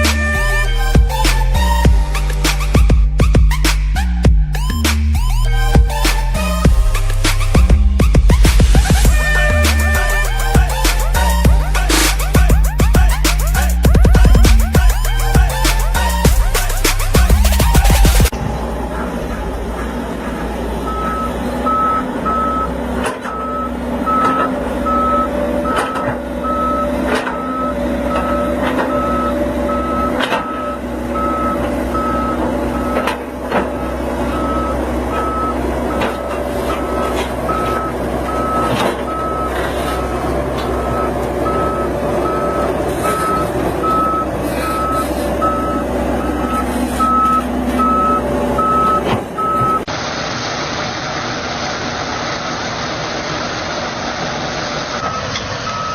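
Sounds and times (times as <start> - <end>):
vehicle engine running: 0.0 - 55.9
reversing alarm beeping: 20.8 - 40.0, 40.6 - 49.9, 55.0 - 55.9.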